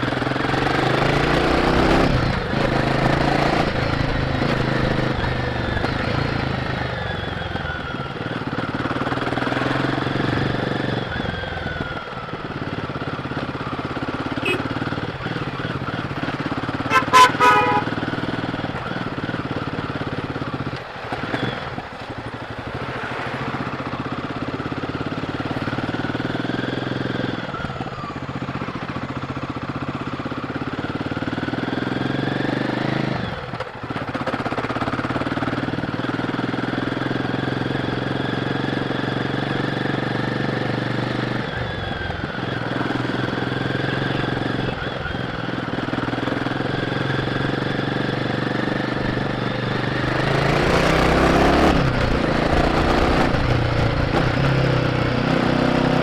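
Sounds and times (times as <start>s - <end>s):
motorcycle engine revving: 0.0s - 56.0s
horn blasts: 14.4s - 14.8s, 16.8s - 18.2s.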